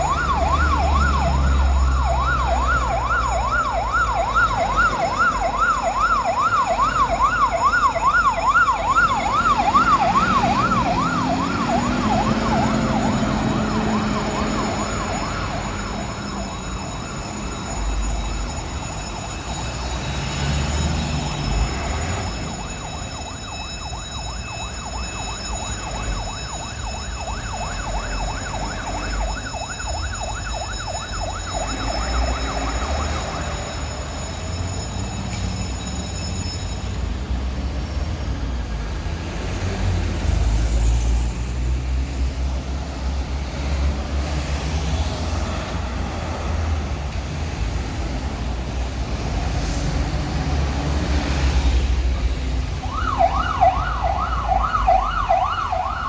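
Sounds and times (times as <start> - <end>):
fire engine siren yelping: 0.0 - 56.0
heavy vehicle engines rumbling: 0.0 - 56.0.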